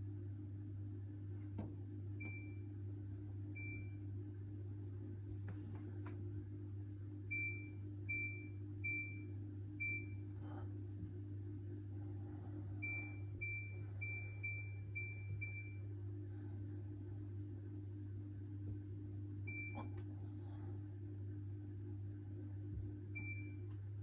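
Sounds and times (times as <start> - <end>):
steady low hum: 0.0 - 24.0
washing machine control panel beeps: 2.2 - 2.8, 3.5 - 4.2, 7.3 - 10.3, 12.8 - 16.0, 19.4 - 20.0, 23.1 - 23.8.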